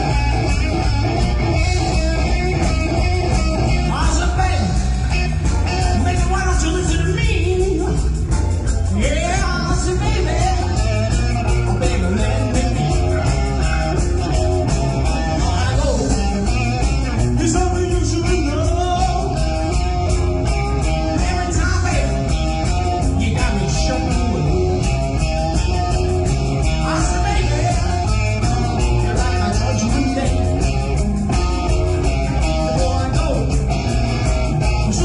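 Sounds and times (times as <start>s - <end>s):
blues-rock band playing: 0.0s - 35.0s.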